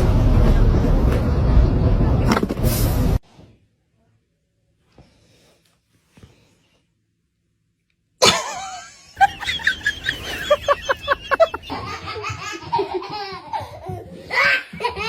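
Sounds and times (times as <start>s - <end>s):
person laughing hard: 8.2s - 15.0s.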